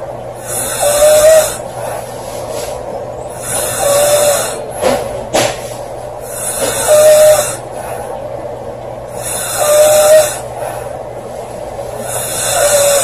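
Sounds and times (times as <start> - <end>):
girl snoring loudly: 0.4 - 1.6, 3.4 - 4.7, 6.2 - 7.6, 9.2 - 10.5, 12.0 - 13.0.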